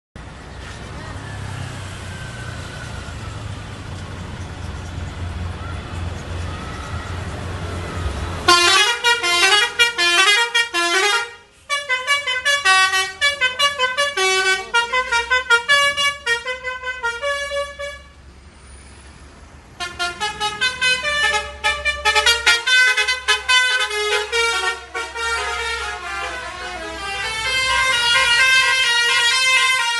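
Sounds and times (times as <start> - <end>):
bus musical horn playing tunes: 8.3 - 18.2, 19.7 - 29.9.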